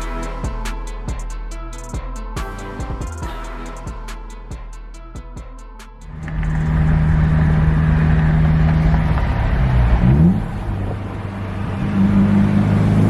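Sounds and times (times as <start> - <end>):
pickup engine droning: 6.0 - 13.0.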